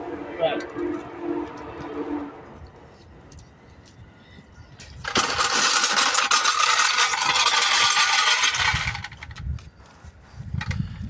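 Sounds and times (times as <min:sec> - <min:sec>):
impact wrench rattling: 0:05.0 - 0:09.4.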